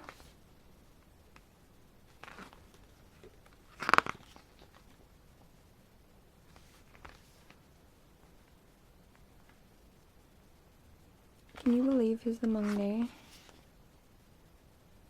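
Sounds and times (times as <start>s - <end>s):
page flipping: 0.0s - 0.4s, 2.1s - 5.0s, 6.5s - 7.6s, 11.6s - 13.7s
paper rustling: 0.0s - 0.4s, 2.1s - 5.0s, 6.5s - 7.6s, 11.5s - 13.7s.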